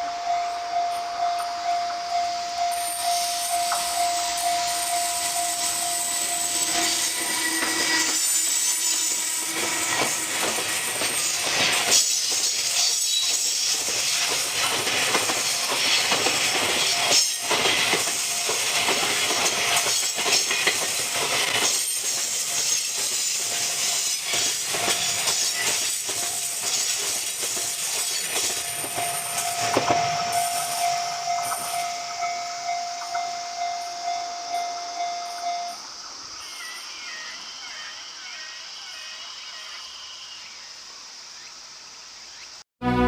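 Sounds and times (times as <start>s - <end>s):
train wheels clattering on rails: 6.5s - 33.8s.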